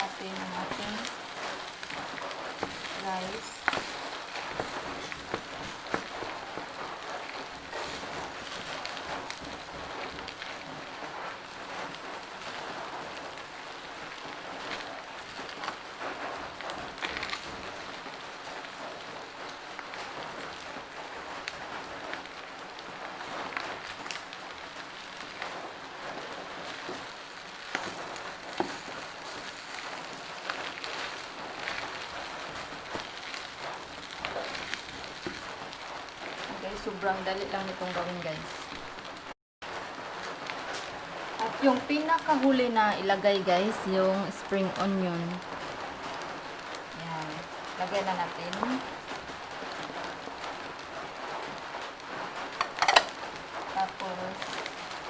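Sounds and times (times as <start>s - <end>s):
spatula scraping a pan: 0.0s - 13.3s, 23.2s - 36.5s, 52.6s - 53.2s
rice sizzling in a pan: 0.0s - 55.0s.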